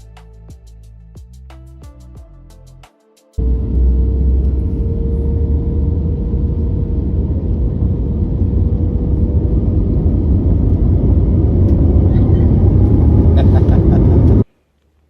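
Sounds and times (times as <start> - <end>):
vehicle engine rumble: 3.4 - 14.5.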